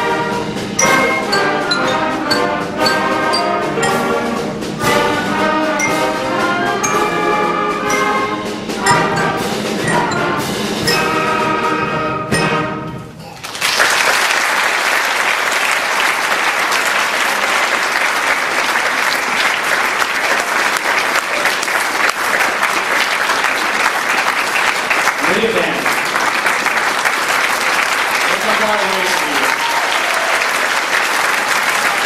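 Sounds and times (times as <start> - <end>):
concert band with brass playing: 0.0 - 13.2, 14.6 - 32.0
audience applauding: 13.3 - 32.0.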